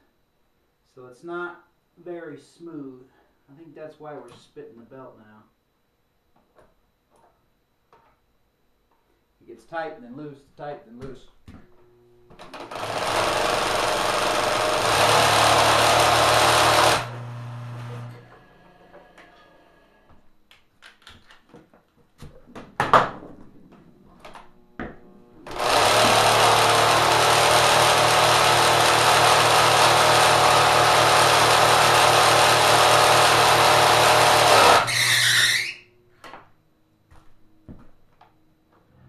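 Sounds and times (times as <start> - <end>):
sewing machine clattering: 12.5 - 17.1, 25.5 - 34.9.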